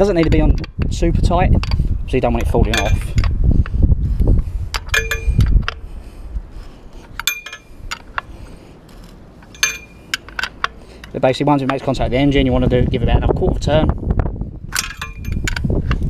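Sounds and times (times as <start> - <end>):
low rumbling handling noise: 0.0 - 16.0
metal spanner clinking: 2.4 - 3.3, 4.7 - 5.8, 7.0 - 8.3, 8.9 - 12.0, 14.7 - 16.0.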